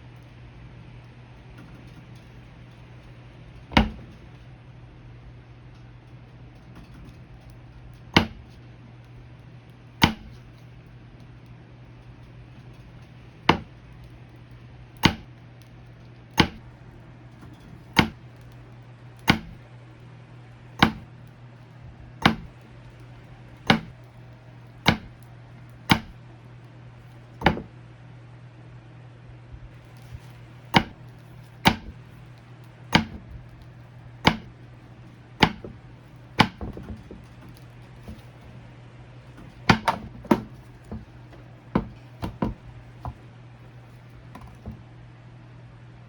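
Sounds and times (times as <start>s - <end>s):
low steady hum: 0.0s - 46.0s
blade chopping through soap: 3.7s - 4.2s, 8.2s - 8.6s, 10.0s - 10.6s, 13.5s - 13.8s, 15.0s - 15.3s, 16.3s - 16.7s, 17.4s - 18.5s, 19.2s - 19.7s, 20.8s - 21.2s, 22.2s - 24.0s, 24.7s - 26.3s, 27.4s - 27.7s, 29.8s - 38.6s, 39.3s - 43.2s, 43.9s - 44.8s.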